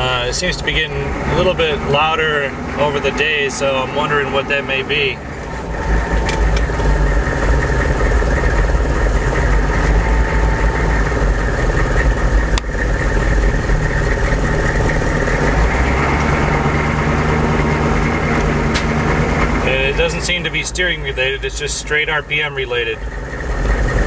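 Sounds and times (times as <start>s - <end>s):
diesel engine running: 0.0s - 24.0s
faint engine whine: 0.0s - 24.0s.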